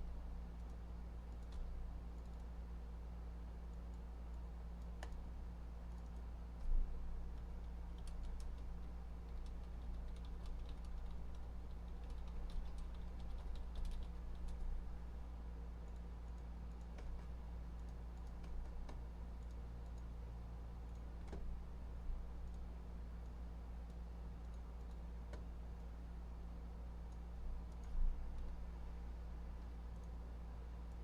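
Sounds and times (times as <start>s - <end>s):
steady low hum: 0.0s - 31.0s
computer keyboard typing: 7.4s - 14.7s, 15.8s - 20.1s.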